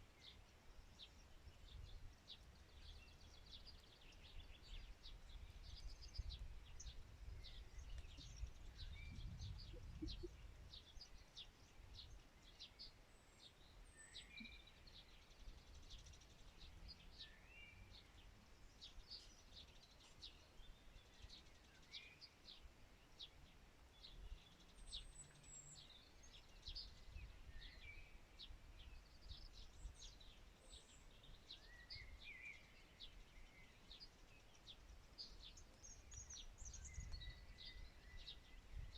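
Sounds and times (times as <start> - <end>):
birds chirping and whistling: 35.2 - 38.9.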